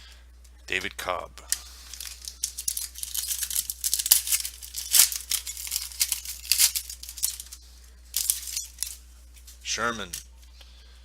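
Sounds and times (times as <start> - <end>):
card pack wrappers crinkling: 1.5 - 7.6, 8.2 - 9.0.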